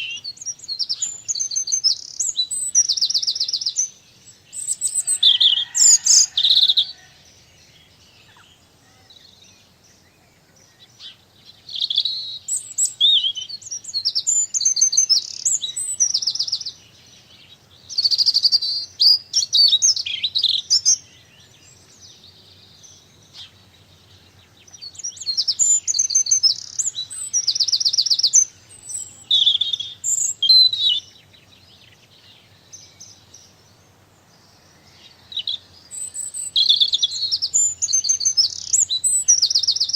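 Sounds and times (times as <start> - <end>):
songbirds trilling and chirping: 0.0 - 39.9.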